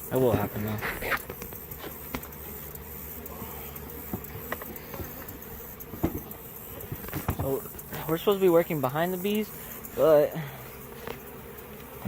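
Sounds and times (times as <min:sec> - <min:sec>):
honey bees buzzing: 0:00.0 - 0:12.0
light knocks: 0:05.9 - 0:07.6.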